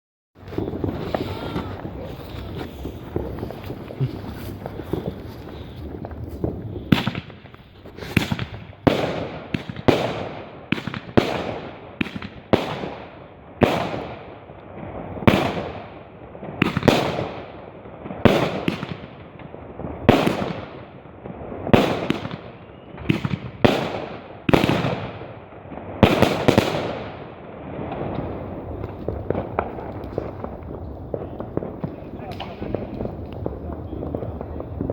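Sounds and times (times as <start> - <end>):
fireworks banging: 0.4 - 34.9.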